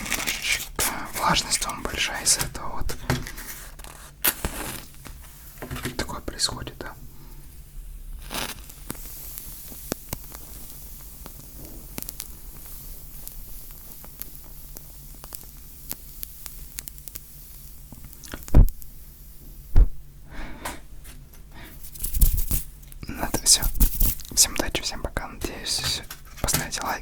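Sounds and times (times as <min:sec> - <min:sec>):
match scraping: 0:00.0 - 0:19.4, 0:21.6 - 0:27.0
matches crackling and scratching: 0:00.0 - 0:19.7, 0:21.0 - 0:27.0
low hiss: 0:00.0 - 0:27.0
loud thumps: 0:19.7 - 0:20.0.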